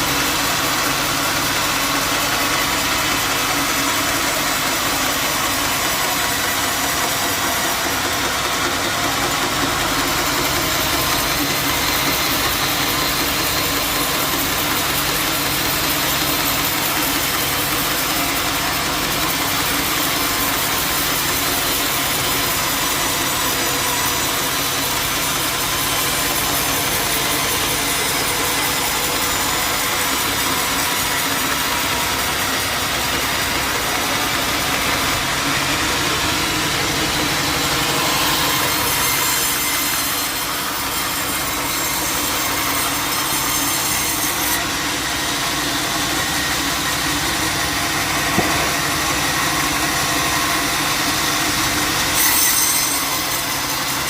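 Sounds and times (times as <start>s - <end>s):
mill engine drone: 0.0s - 52.1s
saw cutting through wood: 0.0s - 54.0s.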